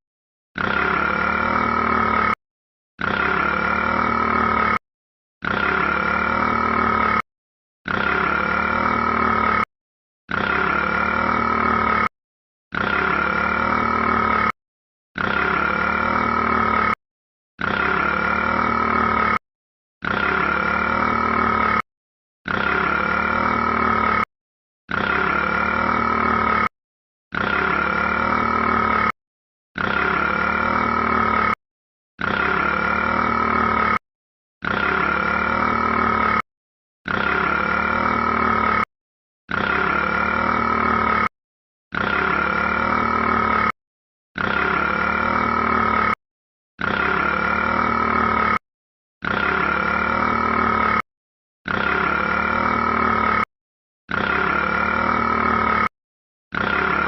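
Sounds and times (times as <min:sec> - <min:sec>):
long burp: 0:00.6 - 0:02.4, 0:03.0 - 0:04.8, 0:05.4 - 0:07.2, 0:10.3 - 0:12.1, 0:12.7 - 0:14.6, 0:15.2 - 0:17.0, 0:17.6 - 0:19.4, 0:20.0 - 0:21.8, 0:24.9 - 0:26.7, 0:27.3 - 0:29.2, 0:29.8 - 0:31.6, 0:32.2 - 0:34.0, 0:34.6 - 0:36.4, 0:39.5 - 0:41.3, 0:41.9 - 0:43.8, 0:44.4 - 0:46.2, 0:46.8 - 0:48.6, 0:54.1 - 0:55.9, 0:56.5 - 0:57.0.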